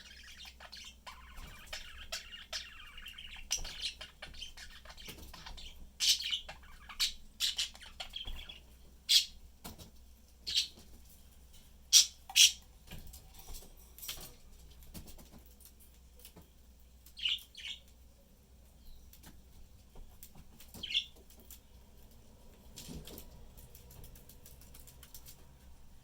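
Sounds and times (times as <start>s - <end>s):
budgerigars chirping: 0.0s - 9.4s, 10.4s - 10.8s, 11.9s - 12.6s, 17.1s - 17.9s, 20.7s - 21.2s
soft clicks and rustling: 19.0s - 25.8s.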